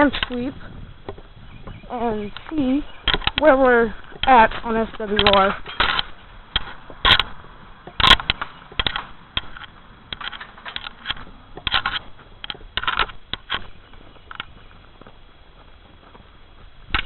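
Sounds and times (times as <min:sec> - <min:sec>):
equipment clicking and scraping: 0:02.0 - 0:16.3.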